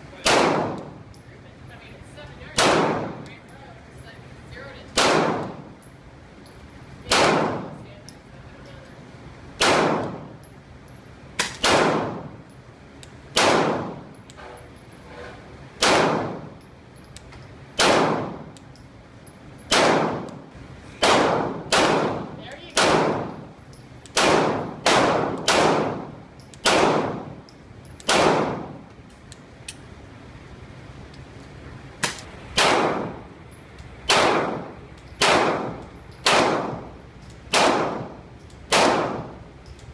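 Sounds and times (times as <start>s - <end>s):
pistol shots: 0.2s - 1.0s, 2.5s - 3.2s, 4.9s - 5.7s, 7.1s - 7.8s, 9.6s - 10.4s, 11.4s - 12.4s, 13.3s - 14.1s, 15.8s - 16.5s, 17.8s - 18.6s, 19.7s - 27.4s, 28.0s - 28.8s, 32.0s - 33.3s, 34.0s - 39.4s.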